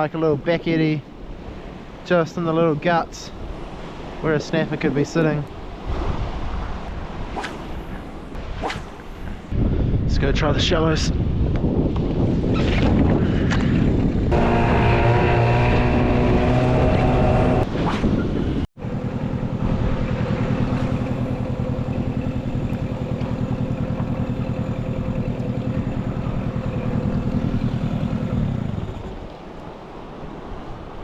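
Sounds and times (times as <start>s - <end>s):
water noise: 0.0s - 9.6s, 12.6s - 31.0s
wind: 0.0s - 31.0s
outboard motor running: 14.3s - 17.6s, 18.8s - 29.3s.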